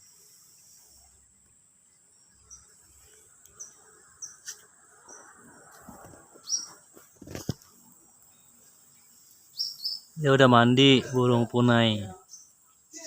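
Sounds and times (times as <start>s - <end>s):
high insect drone: 0.0s - 13.0s
high bird chirps: 6.4s - 6.8s, 9.5s - 10.2s.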